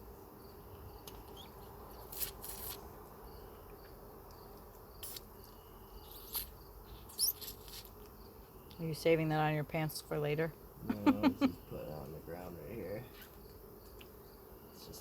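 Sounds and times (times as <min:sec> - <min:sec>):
honeybee colony buzzing: 0:07.9 - 0:15.0.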